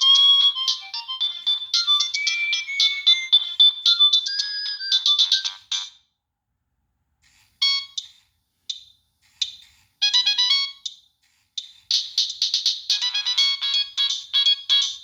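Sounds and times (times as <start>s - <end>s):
electronic phone ringtone melody: 0.0s - 5.9s, 10.0s - 10.8s, 11.9s - 15.0s.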